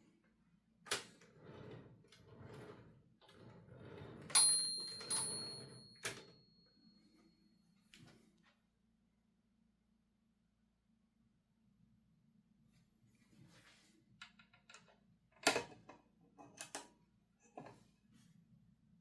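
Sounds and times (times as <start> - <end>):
typewriter bell ding: 4.3 - 6.4.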